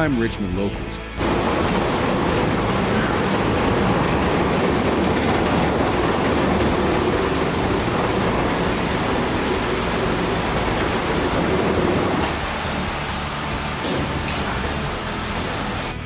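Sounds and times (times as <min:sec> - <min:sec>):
loud rumbling: 0:01.2 - 0:15.9.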